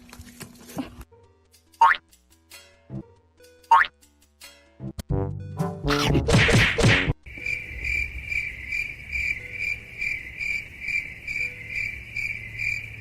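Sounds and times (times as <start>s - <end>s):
cricket chirping: 7.3s - 13.0s.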